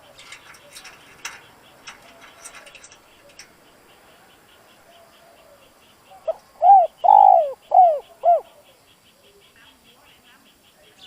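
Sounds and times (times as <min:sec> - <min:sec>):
dove cooing: 0:04.8 - 0:08.6.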